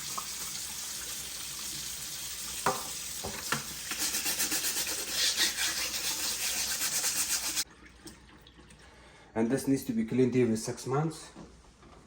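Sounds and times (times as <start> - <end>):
water running from faucet: 0.0 - 8.7
brush scrubbing filter: 3.9 - 7.7.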